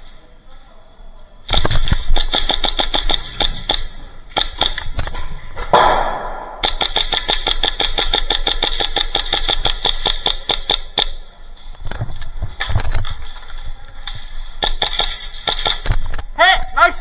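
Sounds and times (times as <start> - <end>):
airsoft gun single shots: 1.5 - 11.2, 14.6 - 16.2
airsoft gun firing full-auto: 1.5 - 11.4, 14.0 - 16.2.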